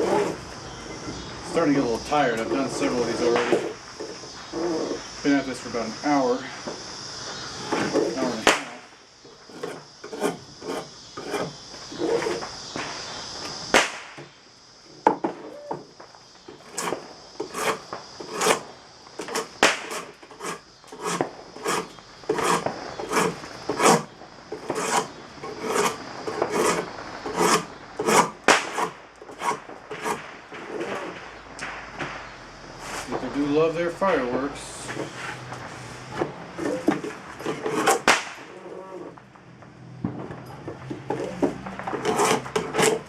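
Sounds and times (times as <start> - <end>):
draw knife scraping wood: 0.0 - 0.4, 9.5 - 12.4, 16.5 - 18.6, 19.2 - 31.1, 36.2 - 38.0, 41.1 - 43.0.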